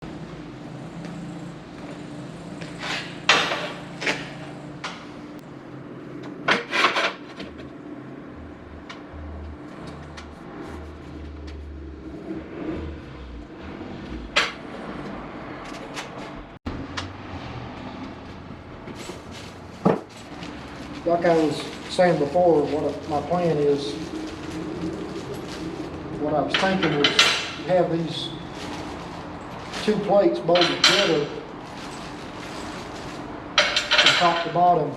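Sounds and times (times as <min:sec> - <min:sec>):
sharp knocks and clanks: 0:03.0 - 0:05.1, 0:26.5 - 0:27.7, 0:33.6 - 0:34.5
steady low hum: 0:07.2 - 0:16.9.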